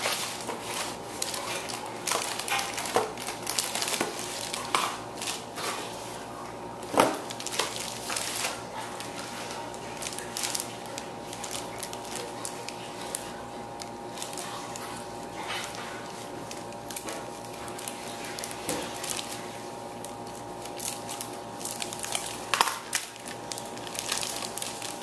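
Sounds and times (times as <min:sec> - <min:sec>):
packaging rustling: 0:00.0 - 0:06.2, 0:06.8 - 0:25.0
plastic crinkling: 0:00.0 - 0:25.0.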